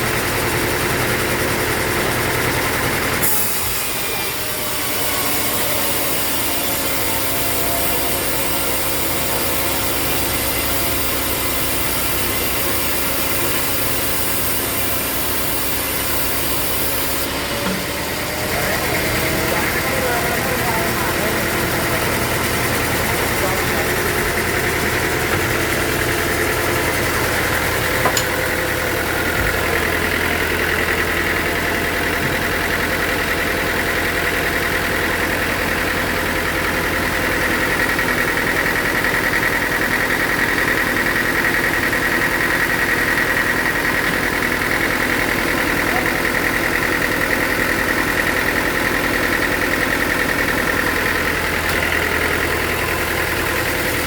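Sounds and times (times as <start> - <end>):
high steady machine whine: 0.0 - 54.0
low engine drone: 0.0 - 54.0.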